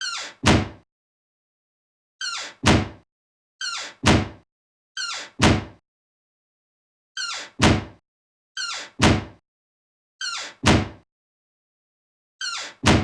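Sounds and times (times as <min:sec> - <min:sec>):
door squeaking: 0:00.0 - 0:00.8, 0:02.2 - 0:03.0, 0:03.6 - 0:04.4, 0:05.0 - 0:05.8, 0:07.2 - 0:08.0, 0:08.6 - 0:09.4, 0:10.2 - 0:11.0, 0:12.4 - 0:13.0
door closing thunk: 0:00.4 - 0:00.8, 0:02.6 - 0:03.0, 0:04.0 - 0:04.4, 0:05.4 - 0:05.8, 0:07.6 - 0:08.0, 0:09.0 - 0:09.4, 0:10.6 - 0:11.0.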